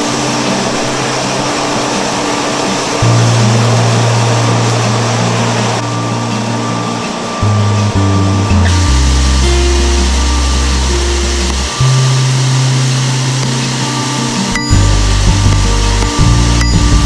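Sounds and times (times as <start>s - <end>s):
background music: 0.0s - 17.0s
deep held bass note: 3.0s - 6.2s, 7.4s - 13.4s, 14.7s - 17.0s
stepping bass line: 7.4s - 13.1s, 14.7s - 17.0s.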